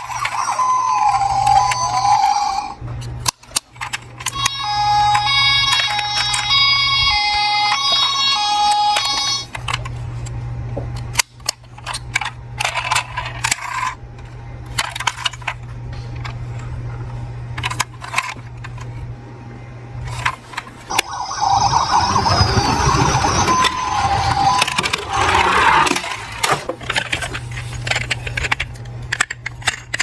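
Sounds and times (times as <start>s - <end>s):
toy cars rattling on track: 0.0s - 4.6s, 11.9s - 14.0s, 20.1s - 30.0s
toy cars clicking: 0.0s - 6.8s, 11.2s - 14.0s, 14.7s - 15.6s, 17.6s - 18.8s, 20.1s - 30.0s.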